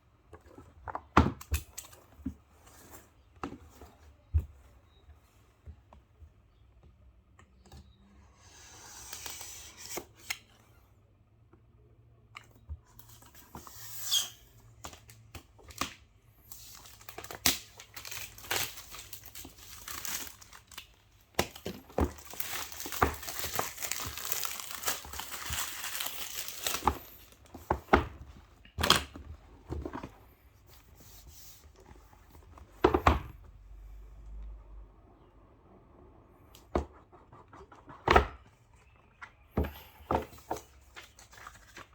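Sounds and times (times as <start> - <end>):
plastic and paper rustling: 16.5 - 32.6, 40.2 - 41.9.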